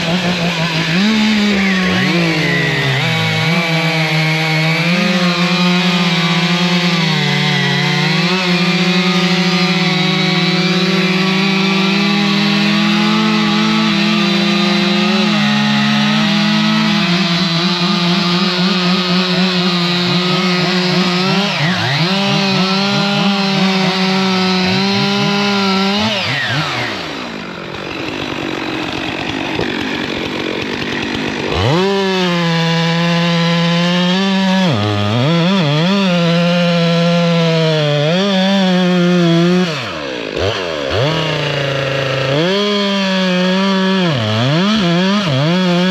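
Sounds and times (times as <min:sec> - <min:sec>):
chainsaw cutting wood: 0:00.0 - 0:45.9.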